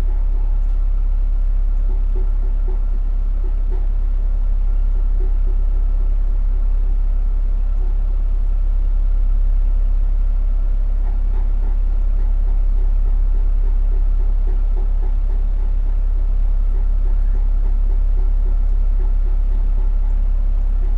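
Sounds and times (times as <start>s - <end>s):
heat pump hum: 0.0s - 20.9s
thin steady whine: 0.0s - 20.9s
fast rhythmic tapping: 1.7s - 4.2s, 11.0s - 20.9s.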